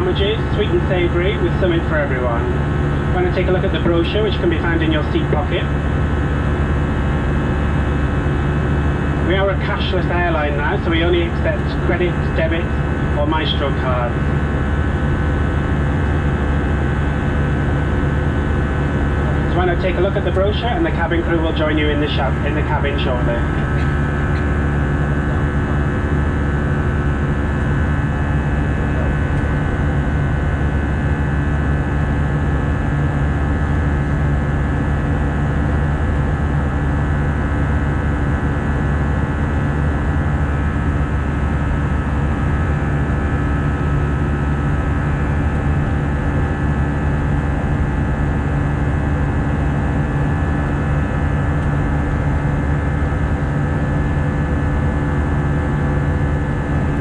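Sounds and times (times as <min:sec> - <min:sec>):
airplane cabin drone: 0:00.0 - 0:57.0
constant hum tones: 0:00.0 - 0:57.0.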